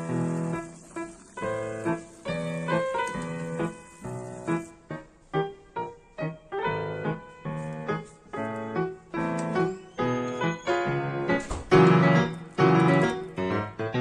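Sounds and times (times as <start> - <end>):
piano background music: 0.0 - 14.0.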